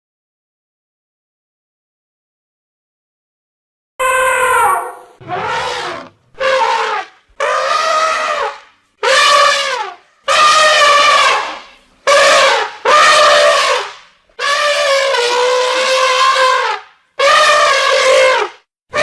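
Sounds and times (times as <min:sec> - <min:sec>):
animal calling: 0:04.0 - 0:19.0.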